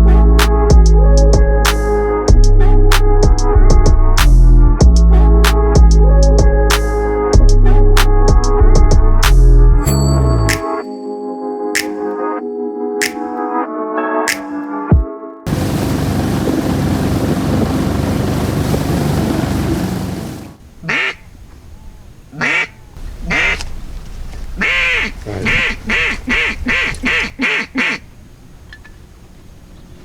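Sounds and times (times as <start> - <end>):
loud steady rushing noise: 15.5 - 20.6
duck quacking: 20.8 - 21.3, 22.3 - 23.7, 24.6 - 28.1.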